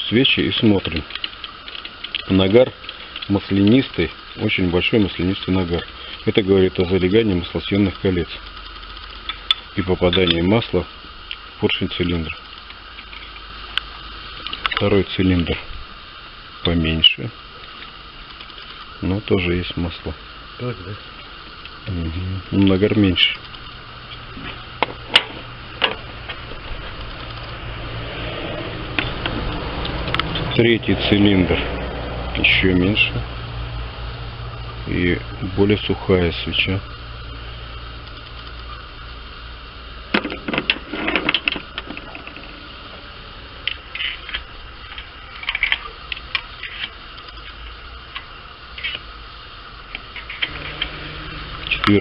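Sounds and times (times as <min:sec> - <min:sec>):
low mechanical hum: 0:00.0 - 0:52.0
sharp clicks: 0:07.8 - 0:09.6, 0:26.9 - 0:27.6, 0:38.0 - 0:38.7.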